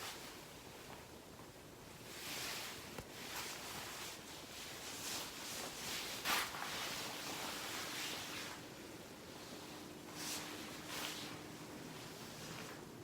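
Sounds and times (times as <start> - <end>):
soft rustling and handling: 0.0 - 13.0.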